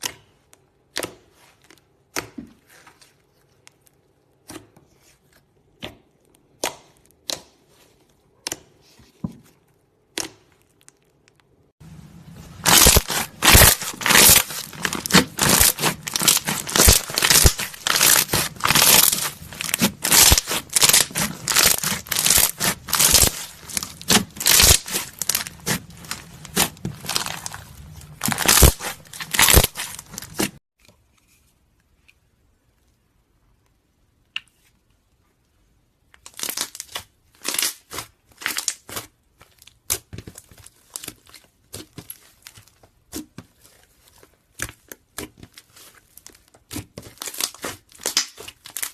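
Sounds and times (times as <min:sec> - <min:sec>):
slime squished by hand: 0:12.4 - 0:30.6.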